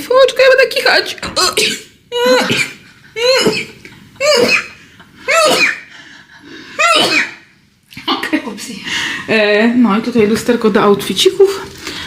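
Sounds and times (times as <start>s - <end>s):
woman sneezing: 1.6s - 5.9s, 6.8s - 7.4s.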